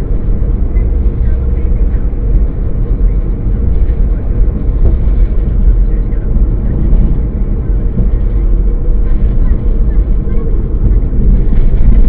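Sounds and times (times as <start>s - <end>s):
road and engine rumble: 0.0s - 12.0s.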